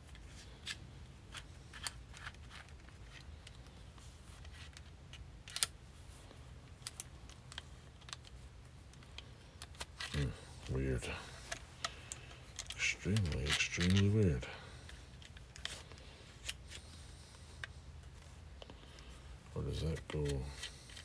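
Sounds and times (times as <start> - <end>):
low steady hum: 0.0 - 21.0
metal tool parts clicking: 11.4 - 14.2.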